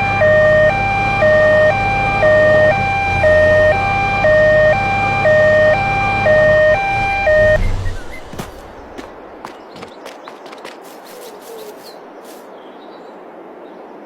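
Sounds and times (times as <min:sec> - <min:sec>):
truck engine running: 0:00.0 - 0:09.4.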